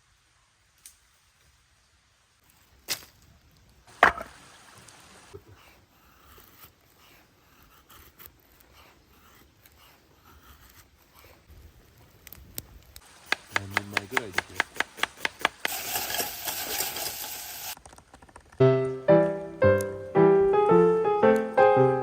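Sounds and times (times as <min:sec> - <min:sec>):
sharp knocks: 0:04.0 - 0:04.4, 0:13.2 - 0:15.8.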